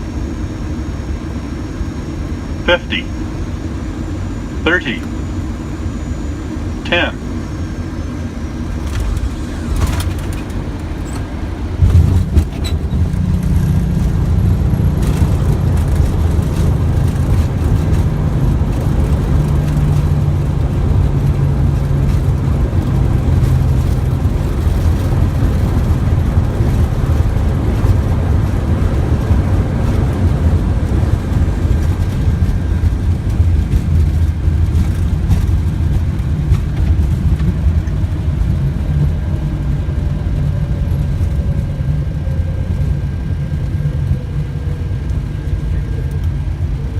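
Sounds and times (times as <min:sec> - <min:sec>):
jet engines and wheels rumbling: 0:00.0 - 0:46.9
low hum sinking in pitch: 0:00.0 - 0:46.9.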